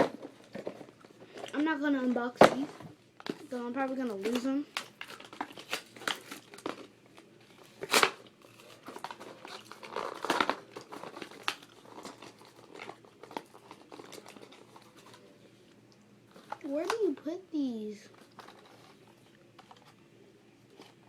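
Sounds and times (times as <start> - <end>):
plastic packaging crinkling: 3.2 - 15.6, 18.1 - 20.0.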